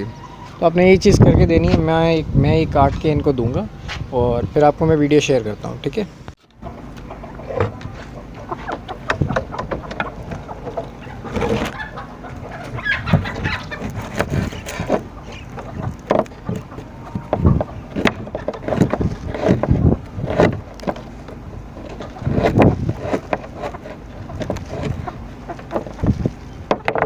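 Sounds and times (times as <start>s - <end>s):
chickens clucking: 0.0s - 2.1s, 2.7s - 27.0s
handling noises: 6.4s - 27.0s.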